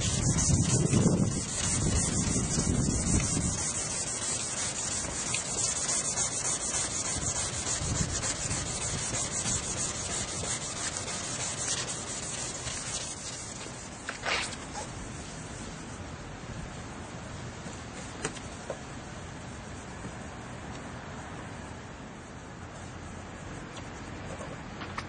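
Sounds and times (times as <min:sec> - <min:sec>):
sanding plastic rasping: 0:00.0 - 0:14.9.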